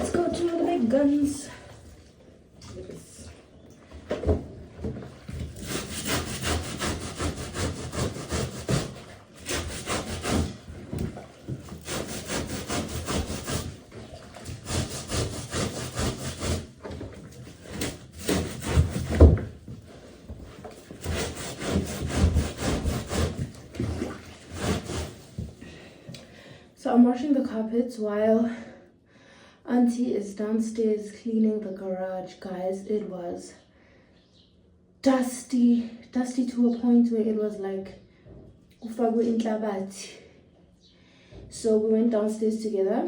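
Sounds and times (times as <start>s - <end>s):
stiff brush scrubbing: 5.5s - 19.5s, 20.5s - 25.6s.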